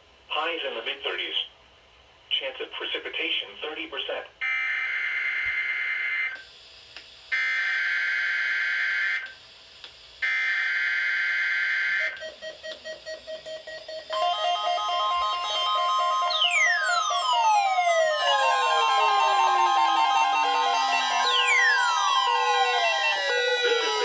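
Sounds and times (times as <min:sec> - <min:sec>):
steady beep-like tone: 0:12.4 - 0:24.0
screechy two-tone data bursts: 0:15.3 - 0:17.3, 0:19.9 - 0:24.0.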